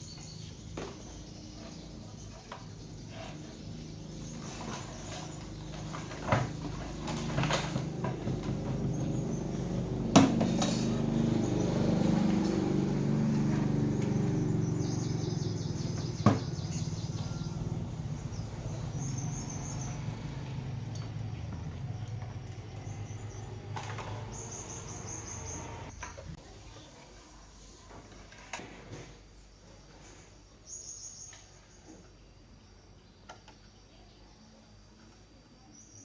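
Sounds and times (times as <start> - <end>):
faint high chirping: 12.9 - 26.0.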